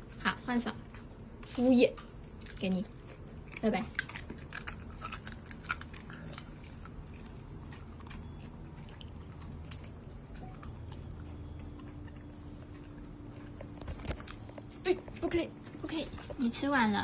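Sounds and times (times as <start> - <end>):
dog crunching a treat: 0.0 - 16.6.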